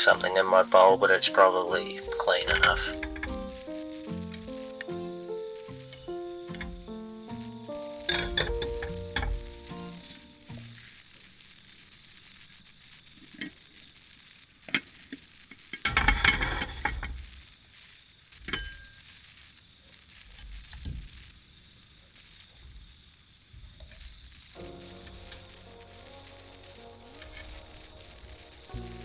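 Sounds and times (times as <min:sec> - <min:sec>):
food sizzling in a pan: 0:00.0 - 0:29.0
utensil scraping a pan: 0:08.0 - 0:10.8, 0:15.9 - 0:17.2.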